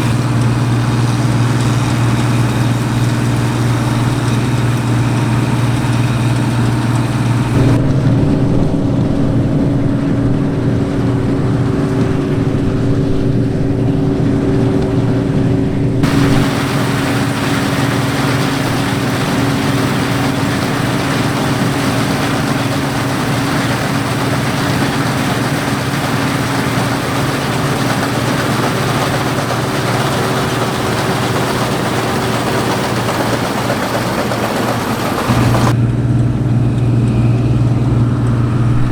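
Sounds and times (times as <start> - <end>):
diesel engine drone: 0.0 - 38.9
threshing machinery noise: 0.0 - 38.9.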